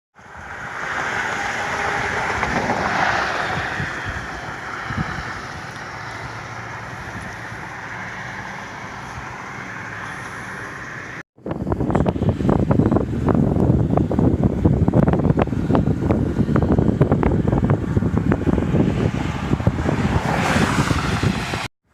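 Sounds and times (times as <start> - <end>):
wind buffeting microphone: 0.2 - 9.4, 11.4 - 21.7.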